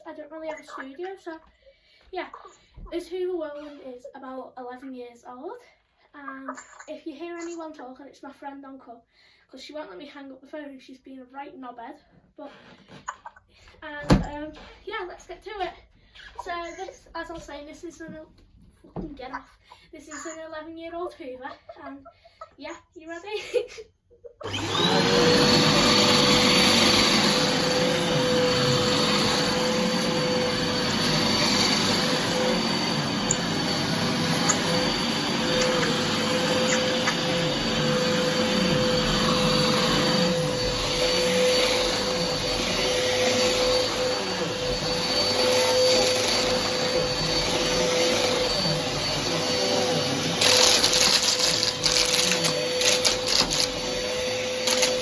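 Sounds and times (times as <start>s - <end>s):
vacuum cleaner running: 24.4s - 55.0s.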